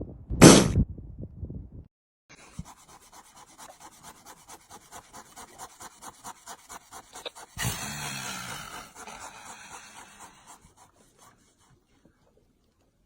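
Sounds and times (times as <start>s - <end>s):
scraping strokes on hide: 2.3s - 12.4s.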